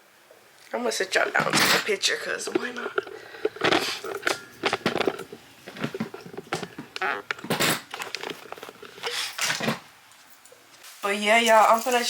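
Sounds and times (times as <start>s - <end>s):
camera being handled: 1.2s - 9.9s.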